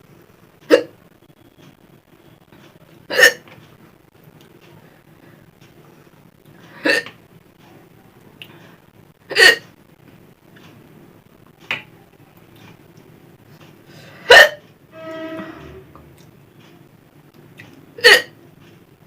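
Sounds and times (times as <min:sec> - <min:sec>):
person hiccuping: 0:03.1 - 0:03.5, 0:18.0 - 0:18.3
short pitched sound: 0:14.9 - 0:16.2.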